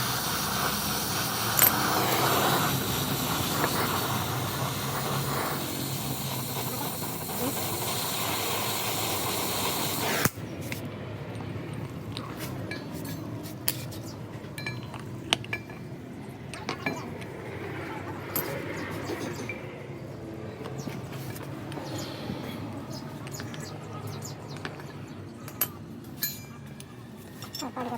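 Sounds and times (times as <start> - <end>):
steady hissing: 0.0 - 10.8
light metallic clinks: 14.6 - 15.9, 18.3 - 18.6, 24.7 - 27.8.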